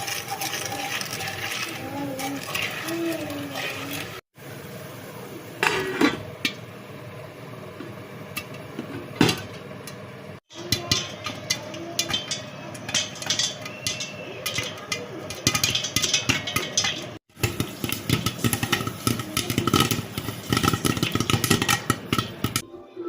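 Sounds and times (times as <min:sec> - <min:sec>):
household objects clinking: 0:10.5 - 0:22.6.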